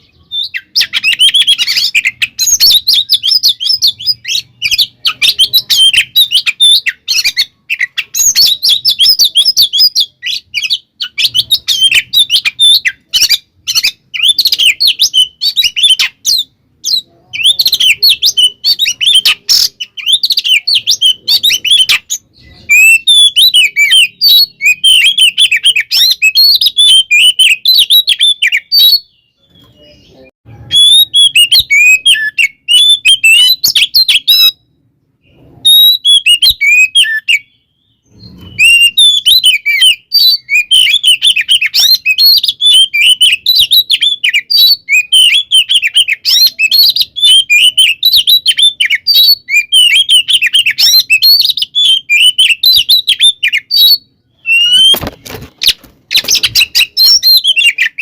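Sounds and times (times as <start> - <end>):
bird chirps and whistles: 0.0 - 58.0.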